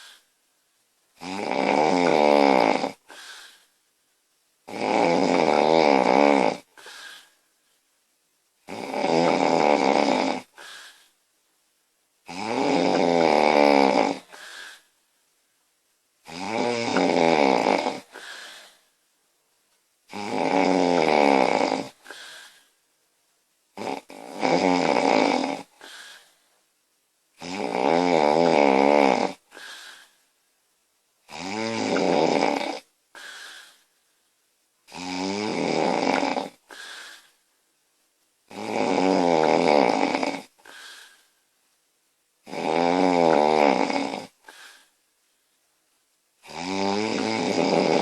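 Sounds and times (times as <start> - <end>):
woman snoring loudly: 1.2 - 3.6, 4.6 - 7.3, 8.7 - 11.0, 12.3 - 14.8, 16.2 - 18.7, 20.1 - 22.6, 23.8 - 26.3, 27.4 - 30.1, 31.3 - 33.8, 34.9 - 37.3, 38.5 - 41.2, 42.4 - 44.9, 46.4 - 48.0.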